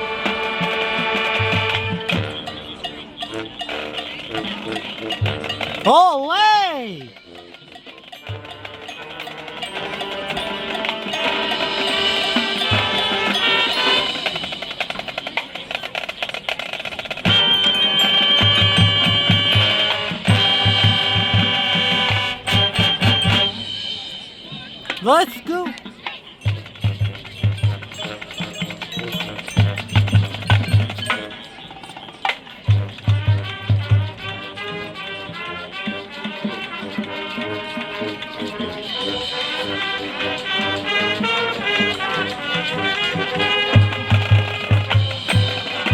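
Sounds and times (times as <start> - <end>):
fast rhythmic drumming: 26.5 - 31.2.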